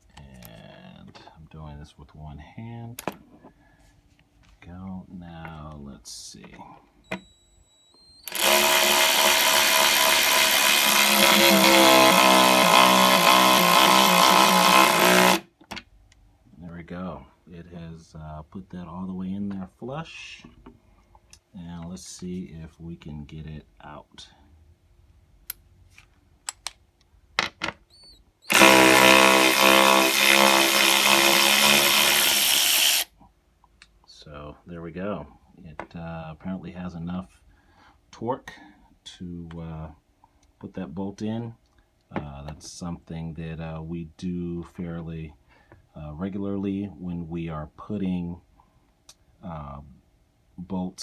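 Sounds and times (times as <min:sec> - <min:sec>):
electric ratchet driving bolt: 0:08.2 - 0:15.4, 0:28.5 - 0:33.1.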